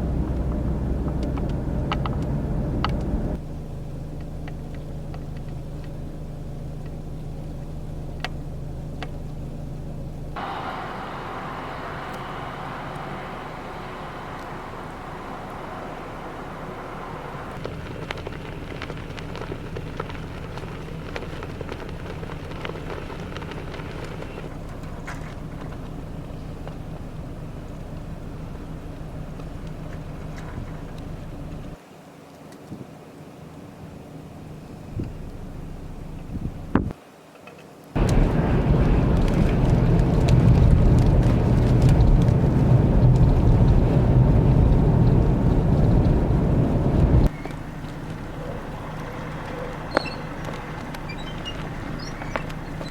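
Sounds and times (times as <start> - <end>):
snow and ice ticking: 0.0 - 3.4, 10.4 - 31.8, 38.0 - 52.9
wind rushing over microphone: 38.0 - 47.4.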